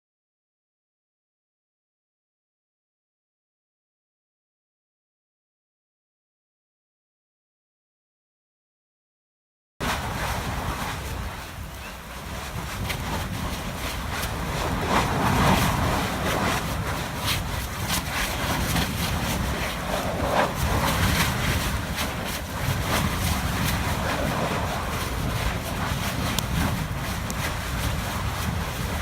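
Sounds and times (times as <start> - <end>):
lava rumbling: 9.8 - 29.0
wind buffeting microphone: 9.8 - 29.0
lava popping: 9.9 - 29.0.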